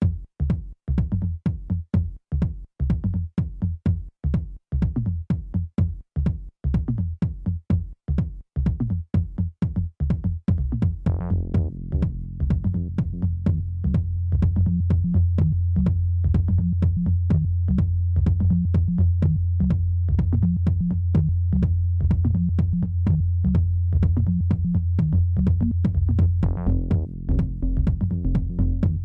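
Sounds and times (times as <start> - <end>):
electronic dance music: 11.1 - 13.4, 26.4 - 29.0.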